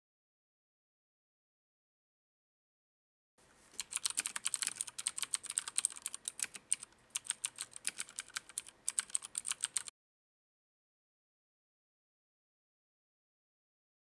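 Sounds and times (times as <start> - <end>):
mechanical keyboard key clicks: 3.8 - 9.9.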